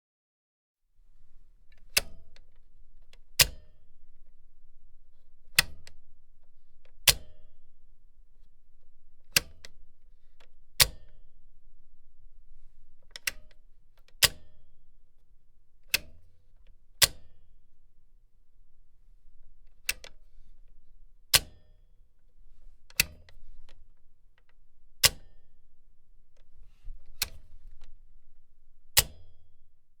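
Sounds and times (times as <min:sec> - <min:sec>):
faint low hum: 0:01.0 - 0:30.0
machine switch clicking: 0:01.7 - 0:03.8, 0:05.5 - 0:06.0, 0:07.0 - 0:07.5, 0:09.3 - 0:09.8, 0:10.8 - 0:11.2, 0:13.1 - 0:14.6, 0:15.9 - 0:16.3, 0:17.0 - 0:17.4, 0:19.7 - 0:20.2, 0:21.3 - 0:21.6, 0:22.9 - 0:24.0, 0:25.0 - 0:25.4, 0:26.4 - 0:28.0, 0:28.9 - 0:29.5.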